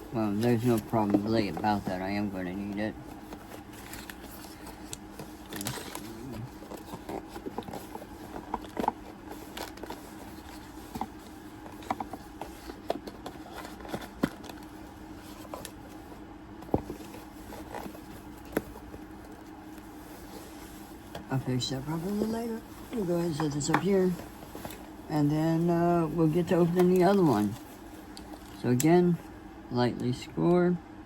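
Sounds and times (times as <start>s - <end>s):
faint steady hum: 0.0s - 31.0s
cardboard box being handled: 0.3s - 28.6s.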